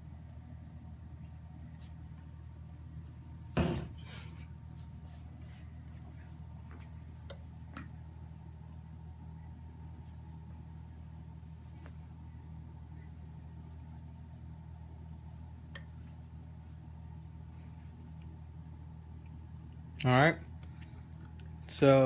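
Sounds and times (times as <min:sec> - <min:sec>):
vacuum pump humming: 0:00.0 - 0:22.0.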